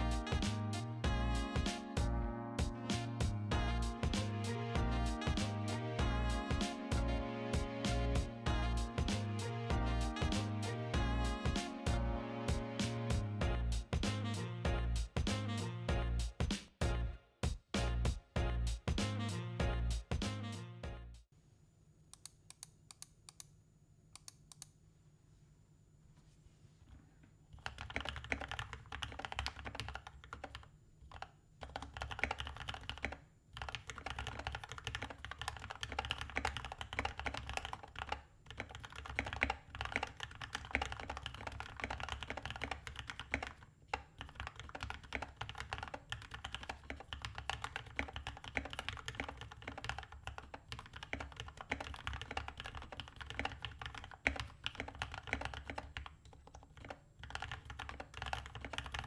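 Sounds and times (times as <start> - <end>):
fast typing on mechanical keyboard: 27.6 - 59.0.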